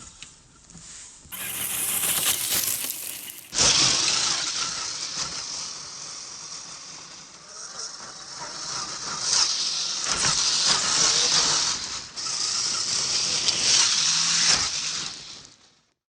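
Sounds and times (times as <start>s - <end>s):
rc truck driving over gravel: 1.3s - 7.1s.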